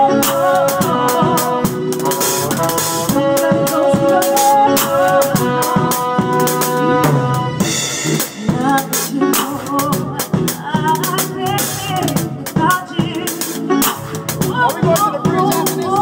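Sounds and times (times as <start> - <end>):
drum kit beat: 0.0 - 16.0.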